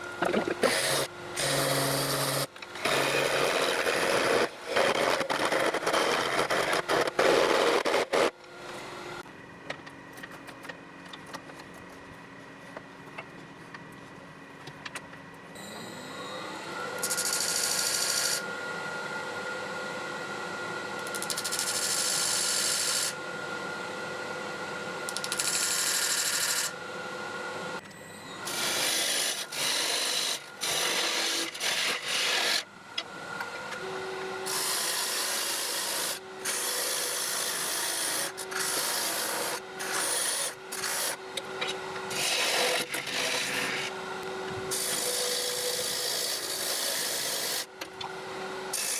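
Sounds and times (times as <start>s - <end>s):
wood lathe motor whine: 0.0s - 9.3s, 15.5s - 48.9s.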